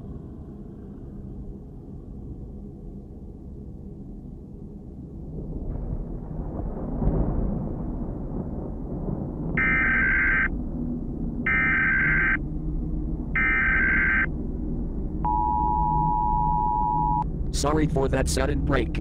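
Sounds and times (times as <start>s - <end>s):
low rumble: 0.0s - 19.0s
digital header tone bursts: 9.6s - 10.5s, 11.5s - 12.4s, 13.4s - 14.3s
two-tone attention signal: 9.6s - 10.5s, 11.5s - 12.4s, 13.4s - 14.3s, 15.2s - 17.2s.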